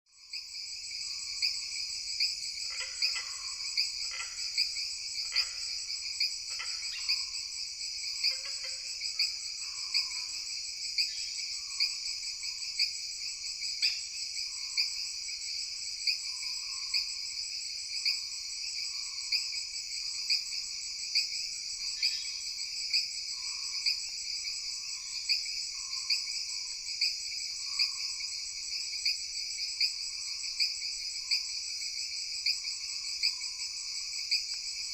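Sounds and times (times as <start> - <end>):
insects chorus: 0.1 - 34.9.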